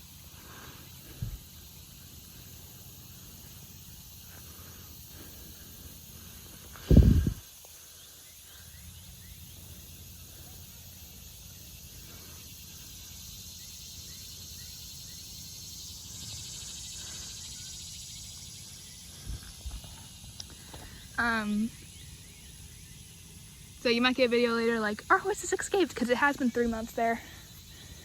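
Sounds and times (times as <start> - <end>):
insects chirping and buzzing: 0.0 - 28.0
wind blast on microphone: 6.8 - 7.5.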